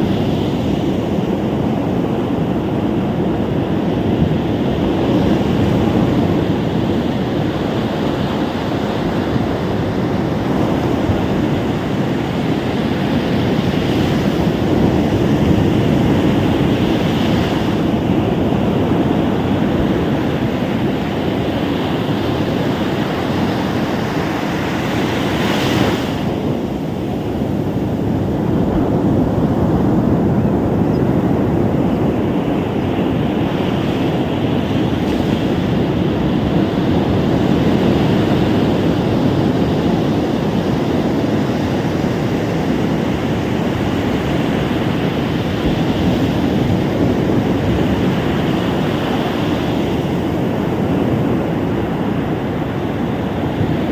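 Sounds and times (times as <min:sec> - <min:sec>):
waves breaking on a beach: 0:00.0 - 0:53.9.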